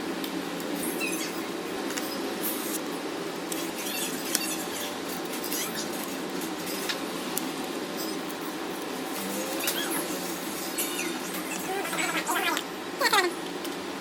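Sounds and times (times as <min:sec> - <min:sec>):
steady hum: 0:00.0 - 0:14.0
short squeaks: 0:00.8 - 0:02.2.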